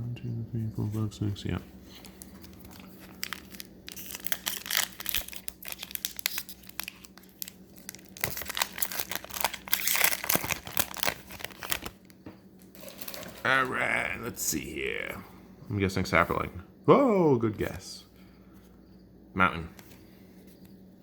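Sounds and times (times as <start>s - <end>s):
foil wrapper tearing and crinkling: 2.0s - 12.1s, 12.7s - 13.4s.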